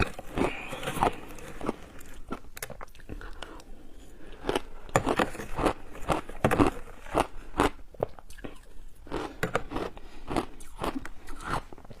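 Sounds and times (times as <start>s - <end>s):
shaved ice crunching when chewed: 0.0s - 3.5s.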